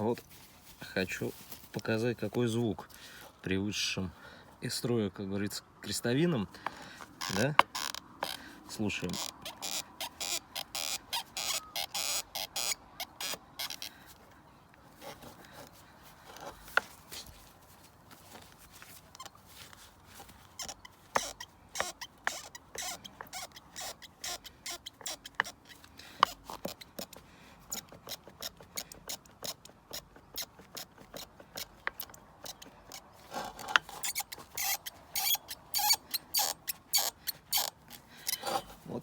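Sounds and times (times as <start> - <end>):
driveshaft squeaking and clicking: 7.2 - 14.0, 19.1 - 19.4, 20.5 - 38.8.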